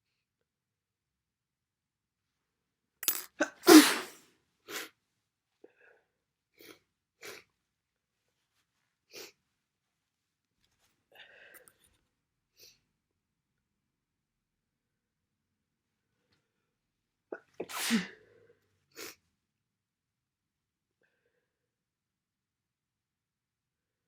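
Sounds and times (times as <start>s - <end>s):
person sneezing: 3.1s - 4.9s, 17.4s - 18.2s
person sniffling: 3.4s - 4.9s, 17.6s - 18.2s.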